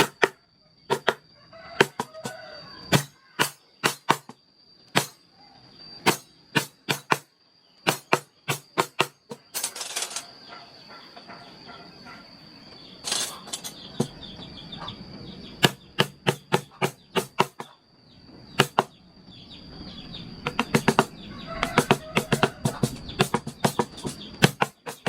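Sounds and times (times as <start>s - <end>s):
mallet striking chisel: 0.0s - 1.2s, 1.8s - 2.3s, 2.9s - 4.3s, 4.9s - 5.2s, 6.0s - 7.3s, 15.6s - 17.7s, 18.6s - 18.9s, 20.5s - 21.1s, 21.7s - 25.0s.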